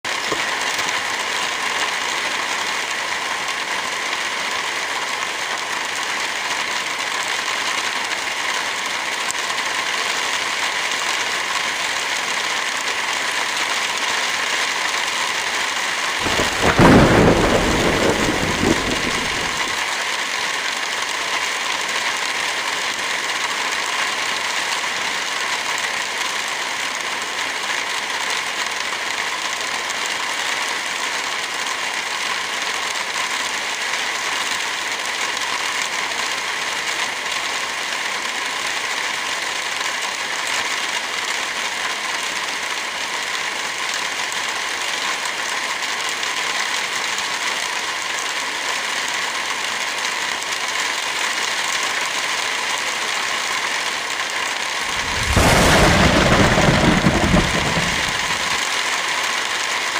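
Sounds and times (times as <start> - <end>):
heavy rain falling: 0.1 - 59.9
thunder clap rumbling: 16.2 - 19.8, 54.9 - 58.6.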